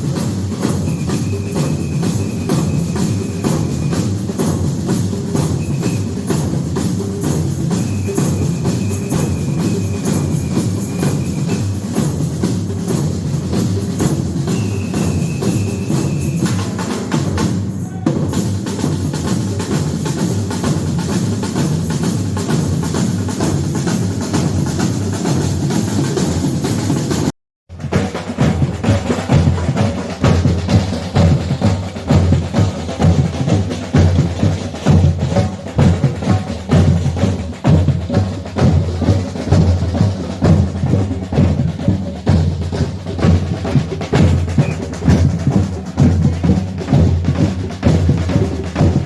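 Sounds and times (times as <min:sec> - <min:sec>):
samba drum group playing: 0:00.0 - 0:49.0
high whistle-like tone: 0:00.8 - 0:04.0, 0:05.5 - 0:06.5, 0:07.7 - 0:11.7, 0:14.5 - 0:16.8.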